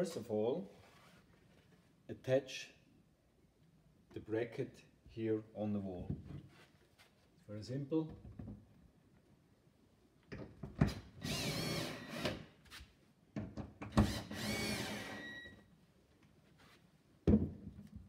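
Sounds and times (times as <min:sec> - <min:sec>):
power drill driving screws into wood: 0:10.9 - 0:12.5, 0:13.9 - 0:15.5.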